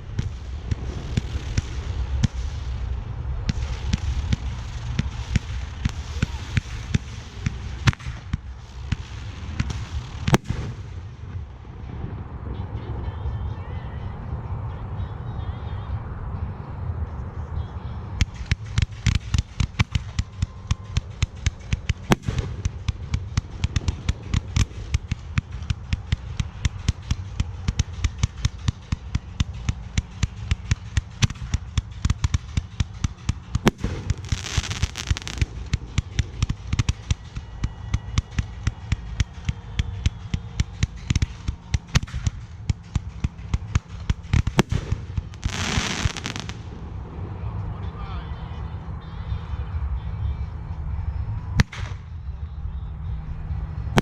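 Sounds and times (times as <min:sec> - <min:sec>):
fireworks hissing: 0:00.0 - 0:11.1, 0:21.6 - 0:37.5, 0:44.0 - 0:46.8
fireworks bangs and pops: 0:00.0 - 0:12.1, 0:18.2 - 0:46.9, 0:51.5 - 0:52.2.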